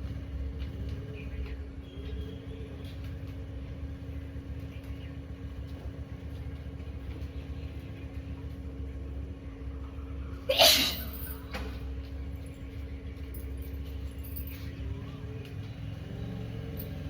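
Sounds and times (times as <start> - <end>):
constant hum: 0.0 - 17.0.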